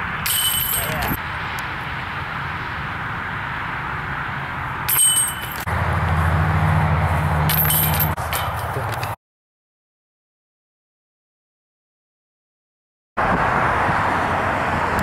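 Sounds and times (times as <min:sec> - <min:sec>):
disc hitting clinking chains: 0:00.2 - 0:01.2, 0:04.9 - 0:05.7, 0:07.5 - 0:08.7.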